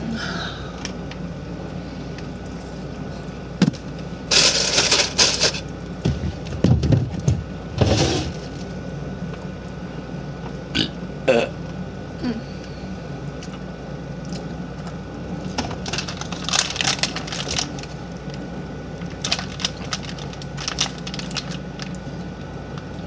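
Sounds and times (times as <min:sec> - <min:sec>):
woman burping: 0:10.7 - 0:11.6, 0:12.2 - 0:12.5.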